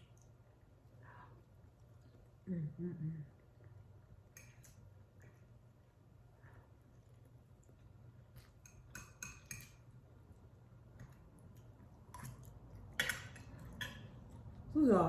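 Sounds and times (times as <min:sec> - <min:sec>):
low steady hum: 0:00.0 - 0:15.0
cutlery clicking against dish: 0:08.6 - 0:09.8.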